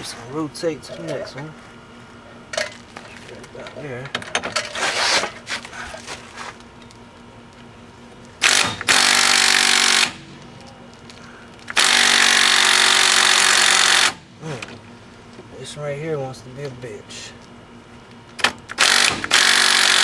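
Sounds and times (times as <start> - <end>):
impact wrench hammering: 8.4 - 10.2, 11.7 - 14.2, 18.4 - 20.0.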